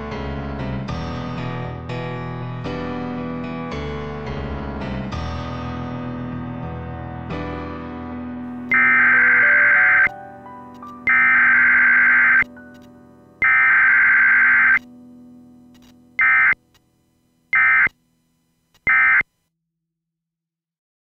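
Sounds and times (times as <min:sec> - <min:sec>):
soft background music: 0:02.9 - 0:13.7
harsh buzzing data bursts: 0:08.7 - 0:10.1, 0:11.1 - 0:12.5, 0:13.4 - 0:14.8, 0:16.2 - 0:16.7, 0:17.5 - 0:18.0, 0:18.8 - 0:19.3.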